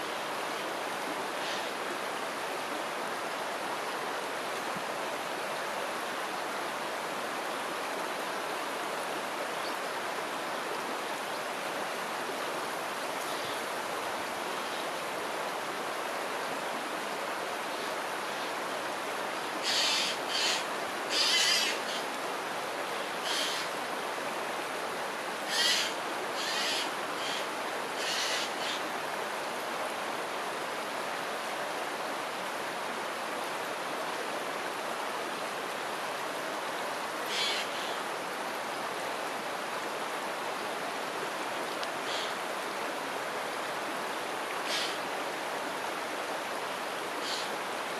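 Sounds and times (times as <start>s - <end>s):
river water flowing: 0.0s - 47.9s
short high bird calls: 19.6s - 22.0s, 23.2s - 23.7s, 25.5s - 28.8s, 37.3s - 38.0s.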